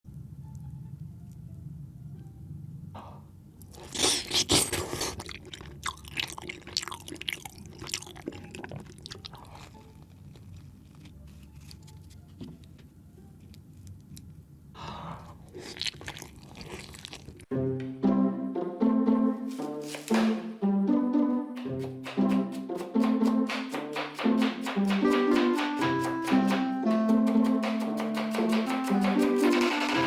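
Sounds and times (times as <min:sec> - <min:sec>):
person biting and chewing: 0:03.7 - 0:12.0, 0:15.4 - 0:17.5.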